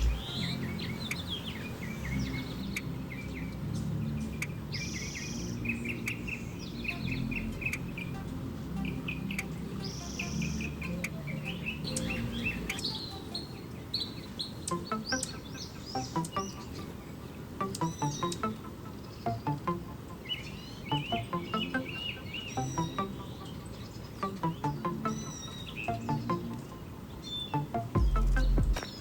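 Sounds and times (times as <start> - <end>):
low steady hum: 0.0 - 4.8
small birds chirping: 0.0 - 29.0.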